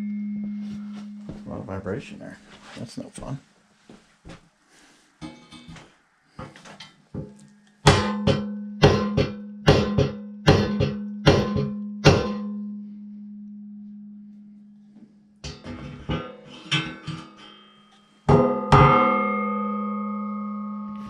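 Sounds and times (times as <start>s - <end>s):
steady low hum: 0.0s - 3.6s
hammer blows on steel frame: 7.8s - 12.6s.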